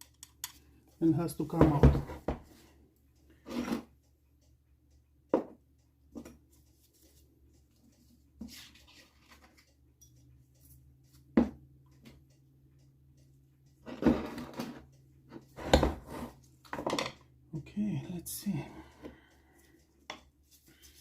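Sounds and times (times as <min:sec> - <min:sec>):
metal tool clicking: 0:00.0 - 0:00.6.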